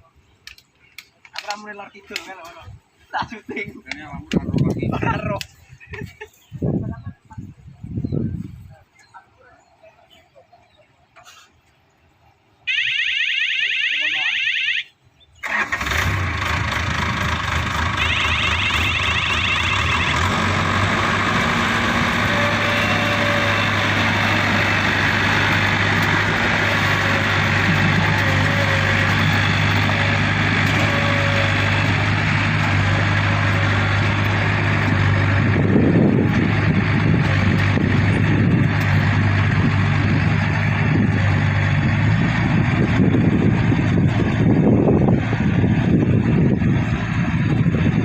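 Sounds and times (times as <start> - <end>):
diesel engine droning: 15.4 - 48.0.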